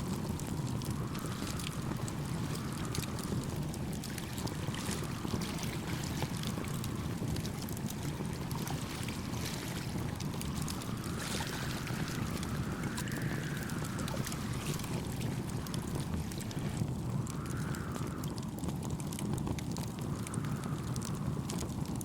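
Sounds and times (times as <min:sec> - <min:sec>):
gentle waves: 0:00.0 - 0:22.0
wood fire crackling and popping: 0:00.0 - 0:22.0
wind rushing: 0:00.2 - 0:07.2, 0:08.8 - 0:18.9, 0:19.8 - 0:21.8
soft whooshing: 0:10.2 - 0:18.0.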